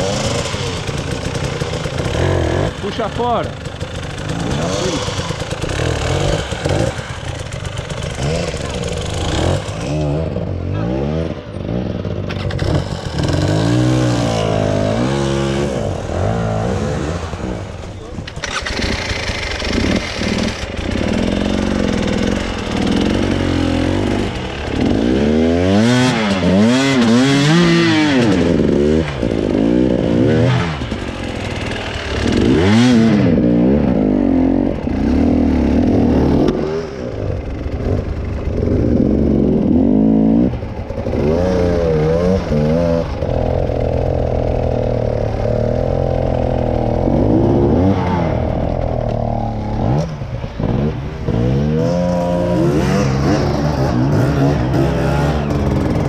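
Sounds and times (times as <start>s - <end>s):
vehicle engine revving: 0.0s - 56.0s.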